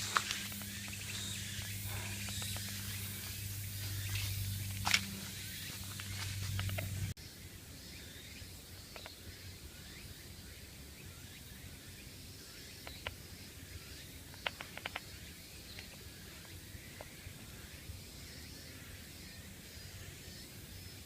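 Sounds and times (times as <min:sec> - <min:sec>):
faint high chirping calls: 0:00.0 - 0:21.0
sharp clicks: 0:06.0 - 0:07.1, 0:14.3 - 0:17.1.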